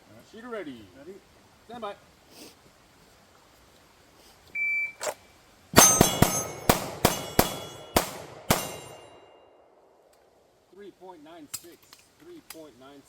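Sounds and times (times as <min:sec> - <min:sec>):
pistol shots: 0:05.8 - 0:09.2
steel targets ringing: 0:05.8 - 0:09.6.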